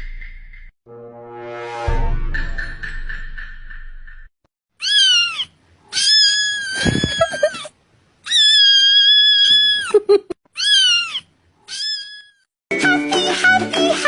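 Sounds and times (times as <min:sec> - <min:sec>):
cat meowing: 0:04.8 - 0:07.7, 0:08.3 - 0:09.9, 0:10.6 - 0:12.5.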